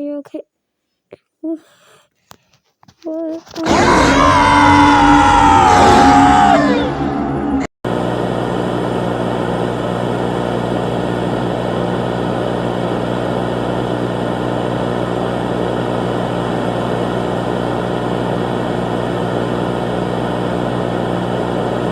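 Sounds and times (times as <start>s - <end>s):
low hum: 3.6s - 13.7s
loud steady engine drone: 3.6s - 21.9s.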